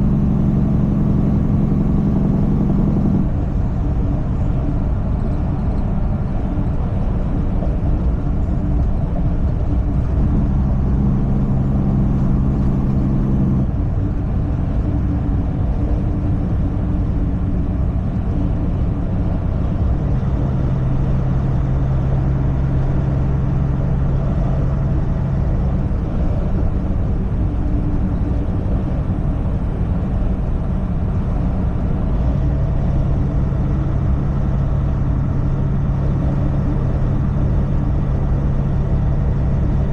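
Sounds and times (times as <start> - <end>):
truck engine and road noise: 0.0 - 39.9.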